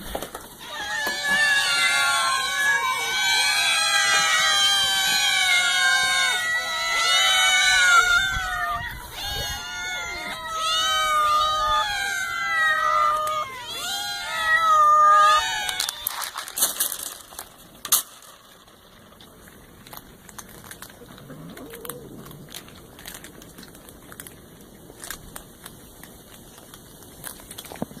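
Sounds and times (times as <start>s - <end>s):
small clicks and crackling rustles: 0.0s - 2.1s, 15.4s - 28.0s
cat meowing: 0.6s - 16.3s.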